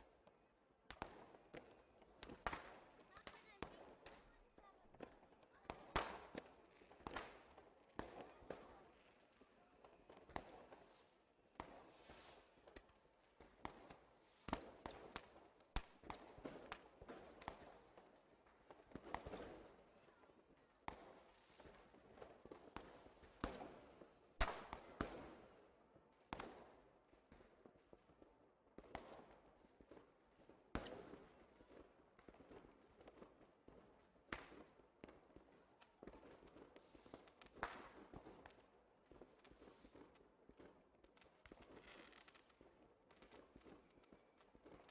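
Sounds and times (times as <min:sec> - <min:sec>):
fireworks bangs with echo: 0:00.9 - 0:08.9, 0:20.9 - 0:25.6, 0:30.8 - 0:43.7.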